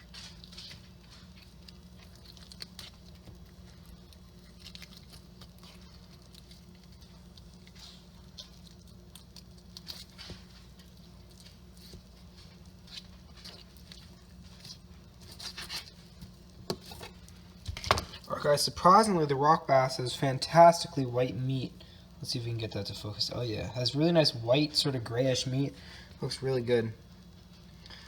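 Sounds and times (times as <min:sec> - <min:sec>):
steady low hum: 0:00.0 - 0:28.0
knife scraping through fish fillet: 0:12.8 - 0:16.1.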